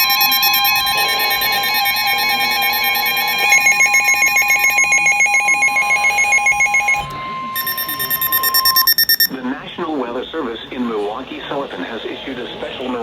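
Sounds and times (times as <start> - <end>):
two-tone alarm: 0.0 - 9.4.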